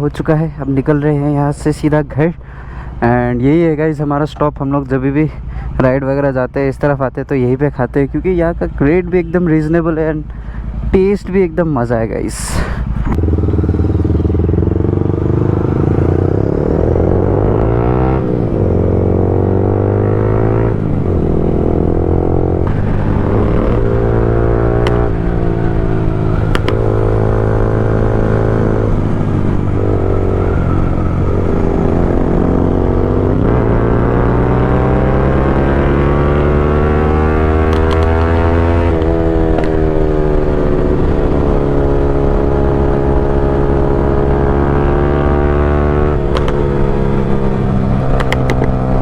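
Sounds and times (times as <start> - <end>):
motorcycle engine accelerating: 12.7 - 49.0.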